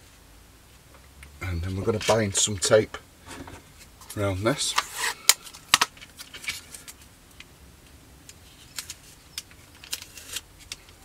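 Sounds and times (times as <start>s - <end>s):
crackling rustles: 0.0s - 11.0s
tape being pulled and wrapped: 4.0s - 7.1s, 8.3s - 11.0s.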